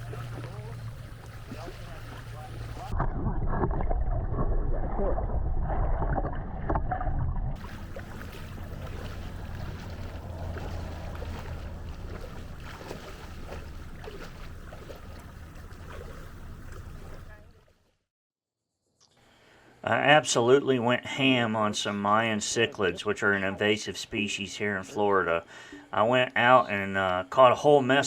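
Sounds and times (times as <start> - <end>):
water sloshing: 0.0 - 4.4, 5.6 - 17.9
wind buffeting microphone: 0.0 - 17.3
low hum: 0.0 - 17.5.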